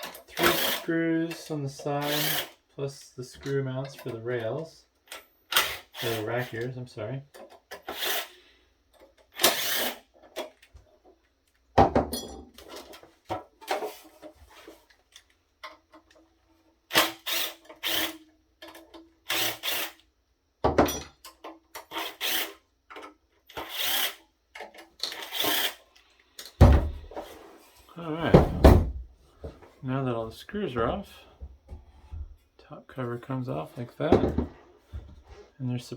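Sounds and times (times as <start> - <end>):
power drill driving screws: 0.3 - 0.9, 2.0 - 2.6, 5.5 - 6.6, 7.8 - 8.4, 9.4 - 10.1, 16.9 - 18.2, 19.3 - 20.0, 21.9 - 22.6, 23.5 - 24.2, 25.1 - 25.9.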